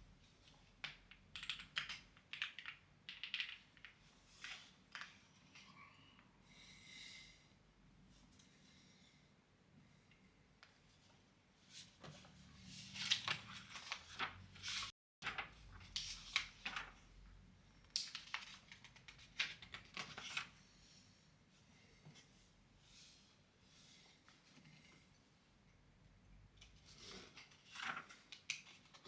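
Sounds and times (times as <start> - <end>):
book pages rustling: 11.7 - 17.0.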